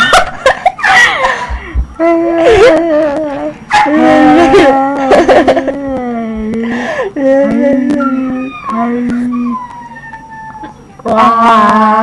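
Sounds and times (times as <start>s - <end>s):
person howling: 2.0s - 5.1s, 7.2s - 12.0s.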